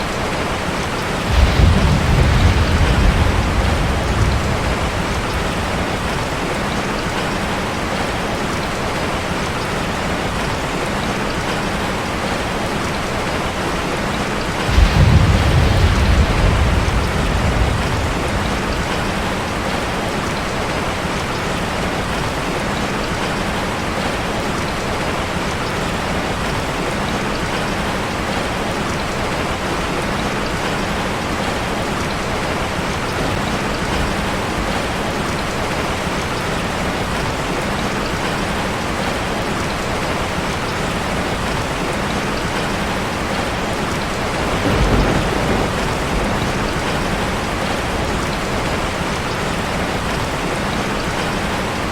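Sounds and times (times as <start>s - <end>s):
rain falling on a street: 0.0s - 51.9s
low rumble of thunder: 0.2s - 8.7s, 14.4s - 20.7s, 42.5s - 51.3s.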